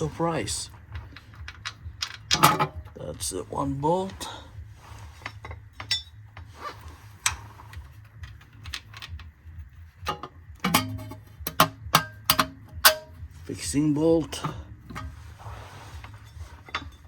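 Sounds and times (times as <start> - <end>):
metallic clicks of bolts and tools: 0.9 - 3.0, 5.2 - 6.5, 7.2 - 13.4.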